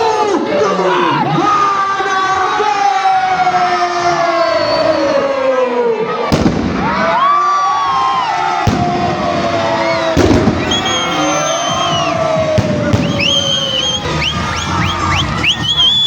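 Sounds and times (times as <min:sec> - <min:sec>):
firework bangs: 0:06.3 - 0:07.2, 0:07.9 - 0:15.1
whistling firework shells: 0:09.8 - 0:16.0.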